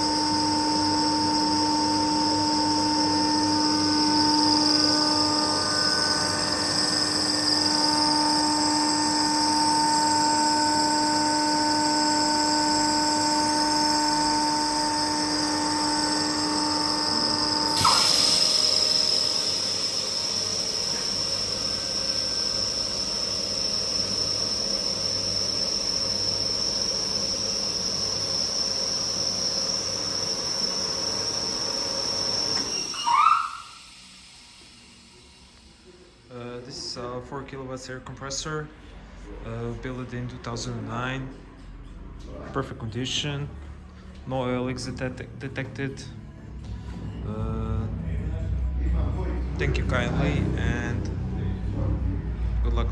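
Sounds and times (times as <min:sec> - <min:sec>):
air compressor humming and whining: 0:00.0 - 0:37.8, 0:38.4 - 0:52.9
rising squeal: 0:03.0 - 0:10.0, 0:15.1 - 0:36.0
burst of air hiss: 0:17.7 - 0:25.3.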